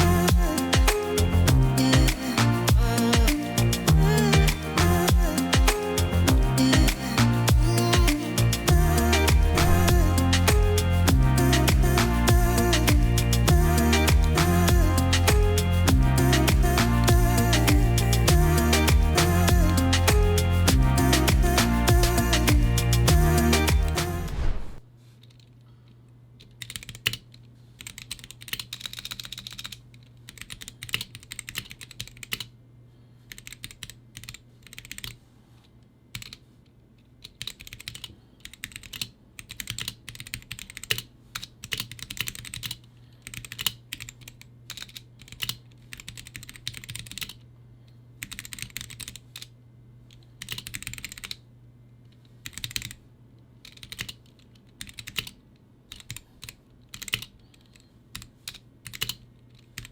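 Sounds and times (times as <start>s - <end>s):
steady low hum: 0.0s - 24.8s
mechanical keyboard typing: 26.4s - 32.5s, 33.3s - 35.2s, 36.1s - 36.4s, 37.2s - 47.4s, 48.2s - 49.5s, 50.4s - 51.4s, 52.4s - 53.0s, 53.7s - 57.3s, 58.2s - 59.9s.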